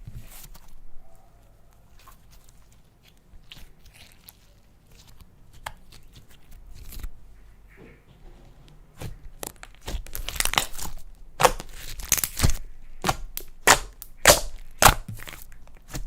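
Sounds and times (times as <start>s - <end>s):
slime squished by hand: 9.0s - 16.0s.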